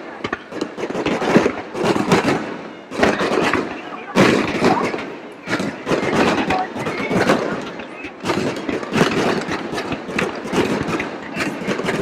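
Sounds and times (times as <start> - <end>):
fireworks bangs and crackling: 0.0 - 12.0
people's voices: 0.0 - 12.0.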